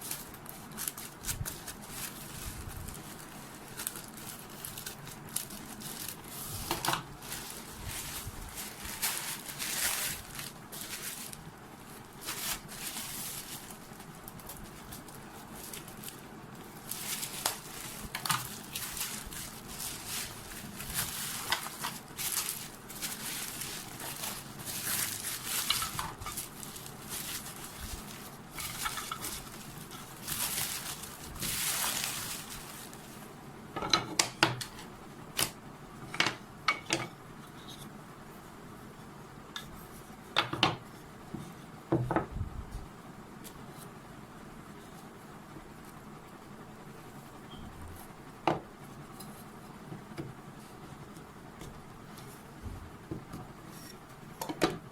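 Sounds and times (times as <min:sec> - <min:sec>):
packaging rustling: 0:00.0 - 0:33.3.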